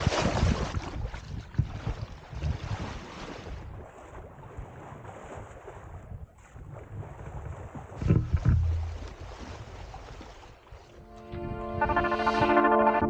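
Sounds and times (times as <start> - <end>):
wind buffeting the microphone: 0.0 - 10.4
wash of water: 7.9 - 12.5.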